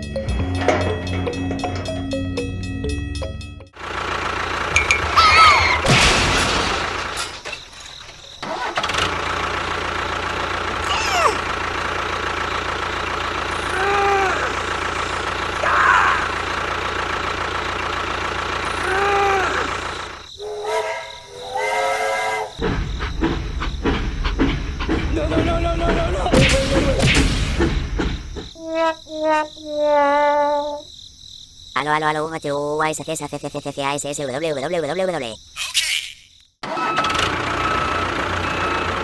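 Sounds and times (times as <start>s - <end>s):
vehicle engine running: 0.0s - 5.8s, 8.4s - 20.4s, 22.5s - 28.6s, 37.0s - 39.0s
short pitched squeaks: 20.4s - 22.6s.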